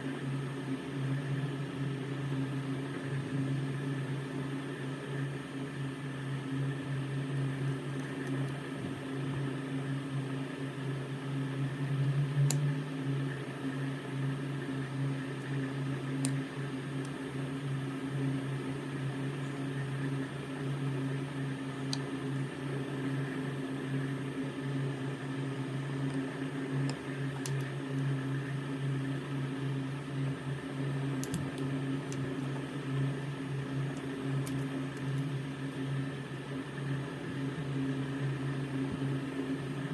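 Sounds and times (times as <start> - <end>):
mechanical hum: 0.0 - 39.9
faint clicks: 26.8 - 28.1, 31.2 - 32.3.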